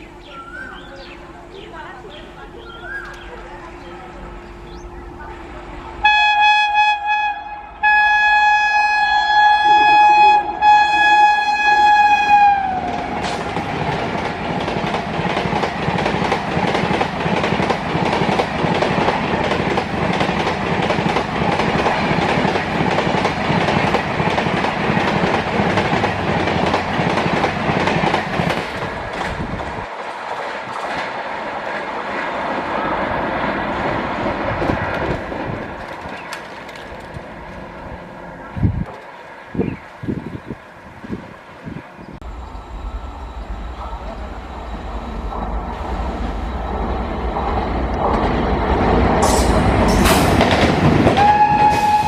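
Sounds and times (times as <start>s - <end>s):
train coaches rumbling past: 0.0s - 52.0s
locomotive horn blasts: 5.5s - 13.2s, 51.2s - 52.0s
wheels clattering over rail joints: 34.1s - 37.9s.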